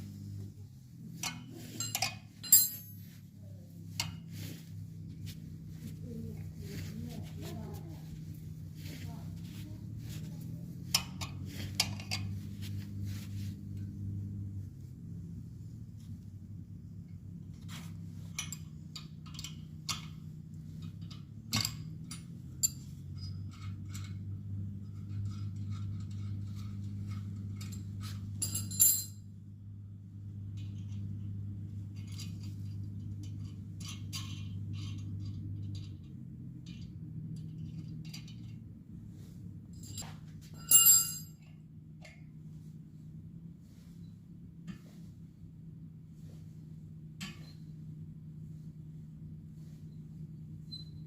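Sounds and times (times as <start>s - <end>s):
low hum: 0.0s - 51.0s
metal parts clinking: 1.2s - 3.0s, 24.9s - 29.2s, 39.8s - 41.5s.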